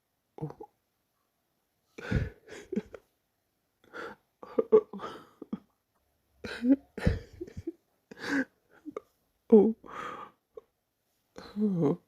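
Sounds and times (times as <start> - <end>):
breathy gasps: 9.8 - 10.4.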